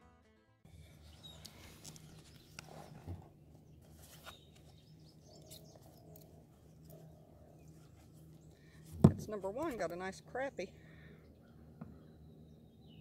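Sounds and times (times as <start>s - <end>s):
low steady hum: 0.7s - 13.0s
bird chirps: 0.8s - 3.0s, 3.6s - 8.6s, 11.0s - 13.0s.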